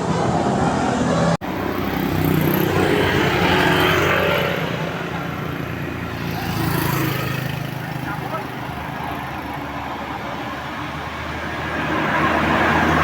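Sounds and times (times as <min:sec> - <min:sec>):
bus driving past: 0:00.0 - 0:13.0.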